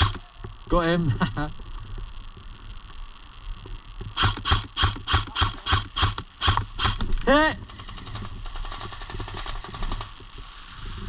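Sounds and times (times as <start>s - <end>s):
airsoft gun shots: 0.0s - 0.2s, 4.2s - 7.1s
steady hiss: 0.0s - 11.0s.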